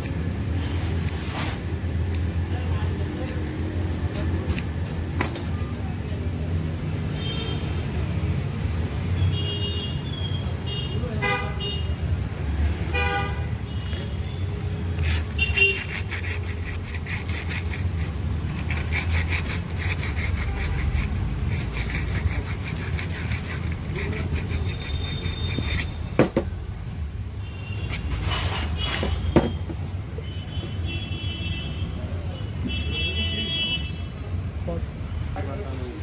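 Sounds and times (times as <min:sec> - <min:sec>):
low traffic rumble: 0:00.0 - 0:36.0
rapid scraping strokes: 0:14.8 - 0:26.4
sharp knocks: 0:26.2 - 0:26.6.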